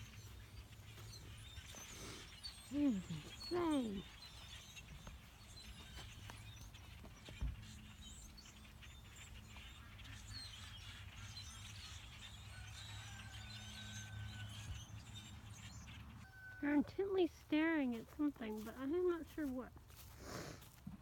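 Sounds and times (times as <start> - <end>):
whistled bird notes: 0.0 - 16.8
blackbirds chirping: 0.0 - 21.0.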